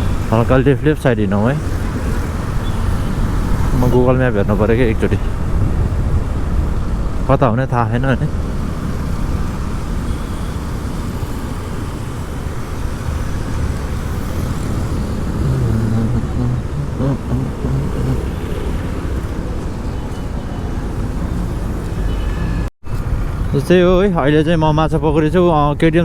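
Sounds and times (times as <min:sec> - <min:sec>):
road traffic noise: 0:00.0 - 0:26.0.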